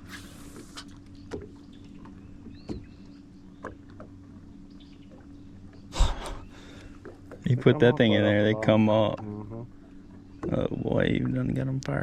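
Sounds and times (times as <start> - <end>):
boat engine low hum: 0.0 - 12.0.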